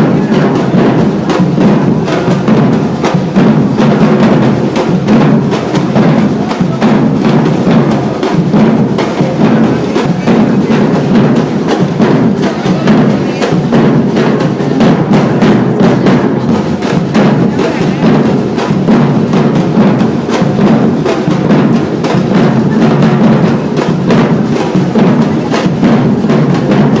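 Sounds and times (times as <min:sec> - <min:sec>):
deep bass drums: 0:00.0 - 0:27.0
percussion ensemble drumming: 0:00.0 - 0:27.0.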